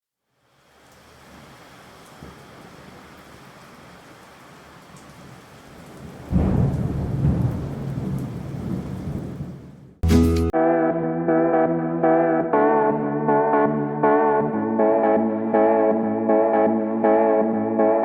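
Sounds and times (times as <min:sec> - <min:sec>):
rain-like hiss: 0:00.0 - 0:10.0
rolling thunder rumble: 0:05.3 - 0:10.0
music: 0:10.0 - 0:18.0.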